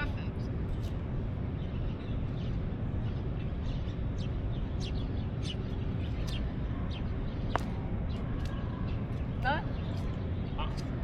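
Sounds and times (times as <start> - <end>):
small birds chirping: 0.0 - 11.0.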